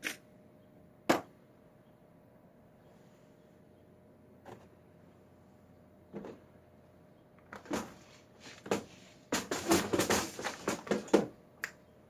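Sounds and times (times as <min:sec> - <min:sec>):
objects clattering on a workbench: 0:06.1 - 0:06.5, 0:07.4 - 0:11.4.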